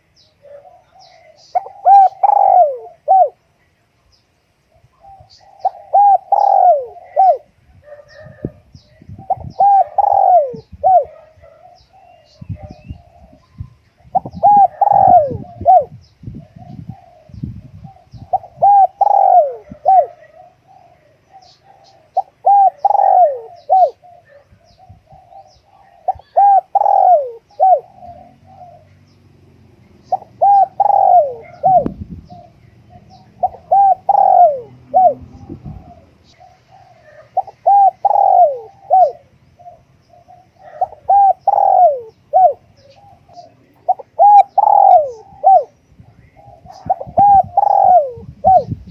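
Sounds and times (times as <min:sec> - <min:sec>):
dove cooing: 0:00.0 - 0:03.4, 0:04.7 - 0:29.1, 0:29.9 - 0:48.9.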